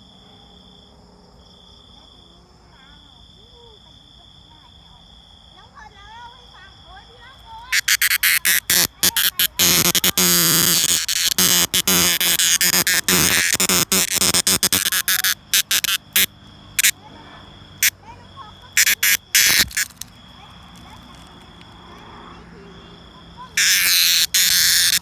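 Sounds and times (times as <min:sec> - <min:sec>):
cicada clicking and buzzing: 0:07.4 - 0:22.2, 0:23.0 - 0:25.0.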